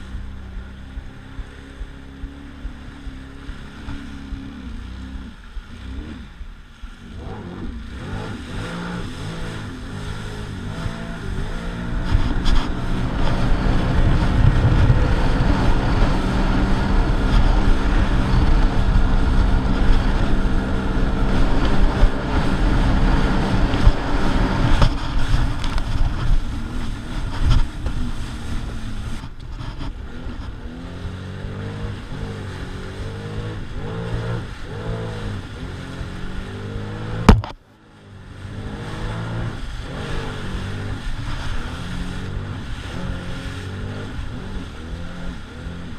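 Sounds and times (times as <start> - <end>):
jet ski engine running: 0.0 - 45.9
sharp knock: 37.3 - 37.6.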